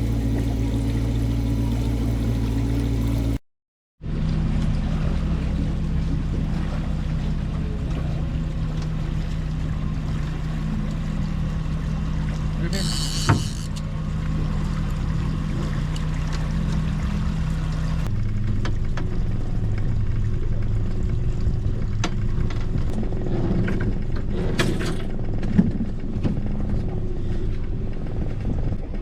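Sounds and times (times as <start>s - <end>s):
boat motor humming: 0.0s - 3.4s, 4.0s - 29.0s.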